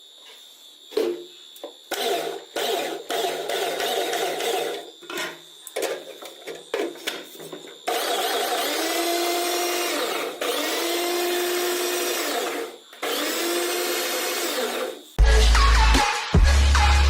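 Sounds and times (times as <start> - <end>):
food processor motor whine: 1.9 - 4.9, 7.8 - 15.1.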